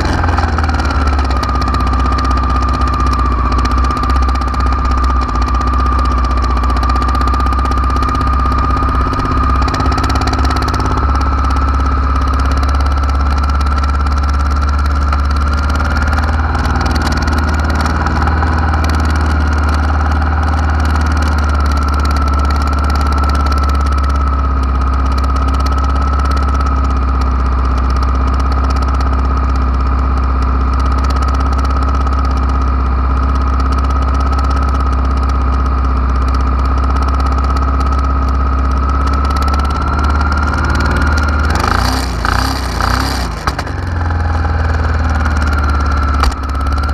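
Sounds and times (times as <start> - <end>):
high-pitched whine: 0.0 - 24.5, 38.0 - 46.9
motorcycle engine idling: 0.0 - 46.9.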